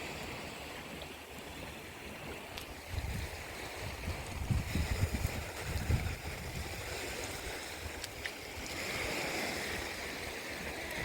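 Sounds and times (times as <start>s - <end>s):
sea surf washing on beach: 0.0s - 11.0s
wind rumbling on microphone: 0.0s - 11.0s.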